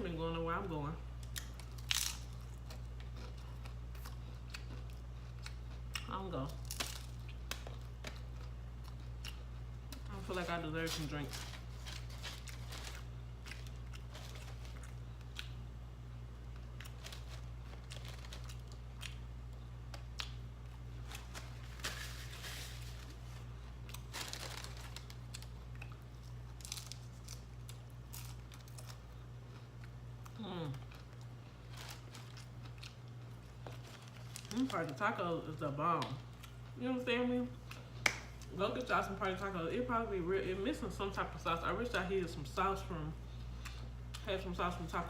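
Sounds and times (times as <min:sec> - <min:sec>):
steady low hum: 0:00.0 - 0:45.0
chewing and crunching food: 0:01.1 - 0:36.8, 0:37.5 - 0:39.4, 0:43.2 - 0:44.7
paper wrappers crinkling: 0:10.1 - 0:15.0, 0:16.7 - 0:18.8, 0:21.0 - 0:25.6, 0:26.2 - 0:29.1, 0:31.6 - 0:35.2.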